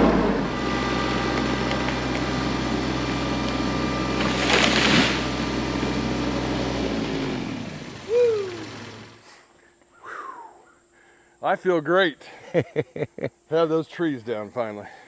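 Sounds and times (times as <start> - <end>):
short falling tone: 0.0 - 0.7
engine idling and running down: 0.0 - 9.2.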